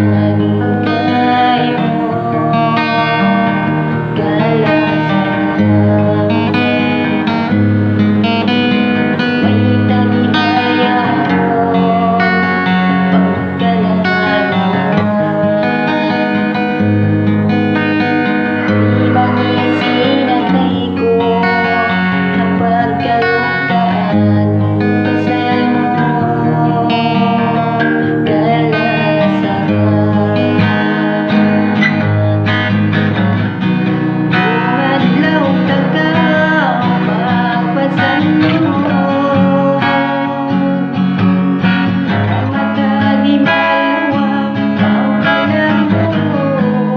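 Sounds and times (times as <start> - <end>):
plucked guitar music: 0.0 - 46.9.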